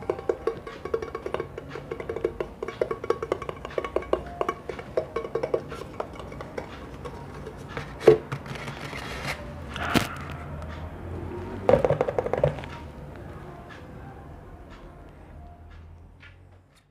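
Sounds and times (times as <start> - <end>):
tapping on hard objects: 0.0 - 8.9, 11.7 - 12.8.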